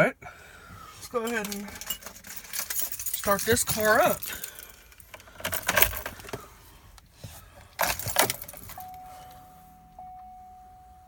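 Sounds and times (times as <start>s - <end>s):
car keys jangling and clicking: 1.2s - 6.4s, 7.7s - 9.4s.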